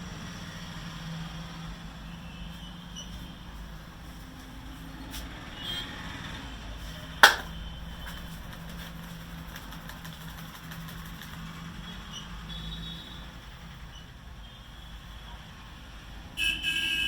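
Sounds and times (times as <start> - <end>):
sharp loud smack: 7.2 - 7.6.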